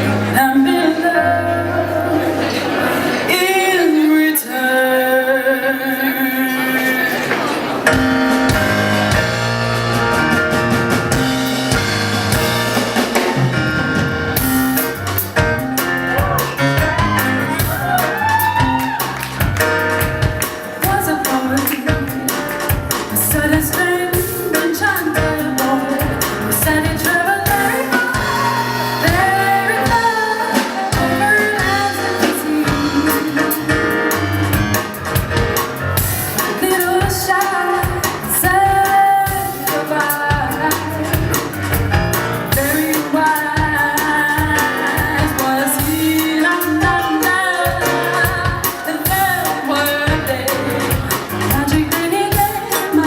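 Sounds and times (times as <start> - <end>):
woman singing jazz: 0.0 - 7.2, 19.6 - 53.0
drums: 0.0 - 53.0
piano: 0.0 - 53.0.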